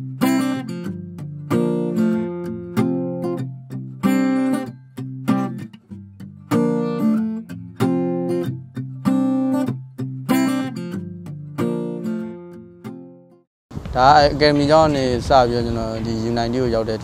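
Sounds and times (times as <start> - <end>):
acoustic guitar strumming chords: 0.0 - 13.4.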